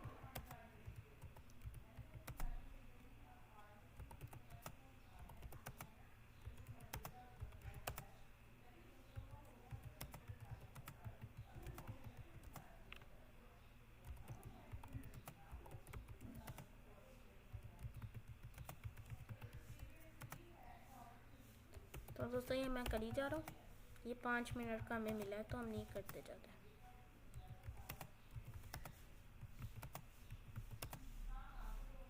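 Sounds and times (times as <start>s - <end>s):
computer keyboard typing: 0.2s - 2.6s, 4.0s - 8.2s, 9.1s - 13.1s, 14.0s - 16.7s, 17.5s - 20.4s, 21.7s - 26.3s, 27.3s - 31.1s.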